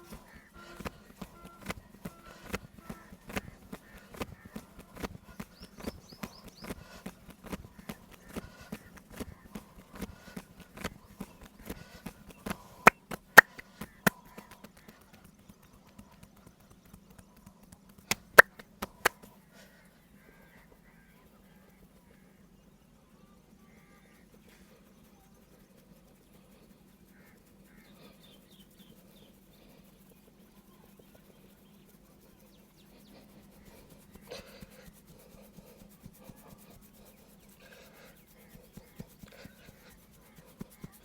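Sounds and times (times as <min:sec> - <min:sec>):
hands slapping body: 0:00.0 - 0:14.9, 0:17.8 - 0:19.3
low steady hum: 0:00.0 - 0:28.1.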